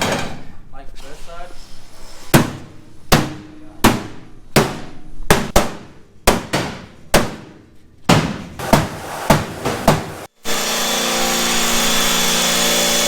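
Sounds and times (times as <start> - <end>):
hammer striking sheet metal: 8.1 - 10.3.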